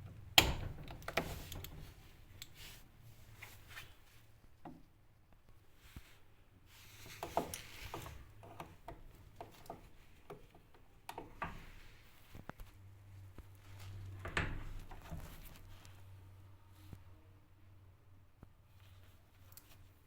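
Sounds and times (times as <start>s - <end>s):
handling clicks and rubbing: 0.4s - 4.9s, 6.8s - 12.8s.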